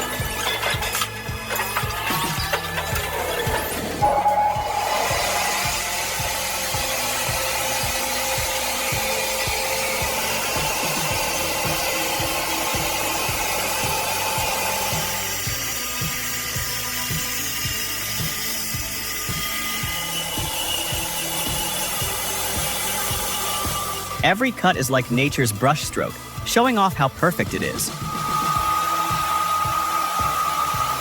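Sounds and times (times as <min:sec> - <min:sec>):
power saw whining through log: 0:00.0 - 0:24.3, 0:27.4 - 0:31.0
background music with beat: 0:00.0 - 0:31.0.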